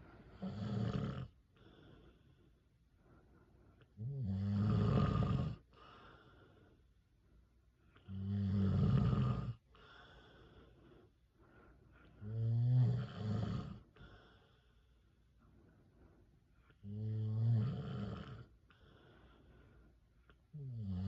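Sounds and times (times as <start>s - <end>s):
quiet breathing: 0.0s - 21.0s
man snoring: 0.3s - 1.3s, 4.0s - 5.6s, 8.1s - 9.6s, 12.2s - 13.8s, 16.8s - 18.5s, 20.5s - 21.0s.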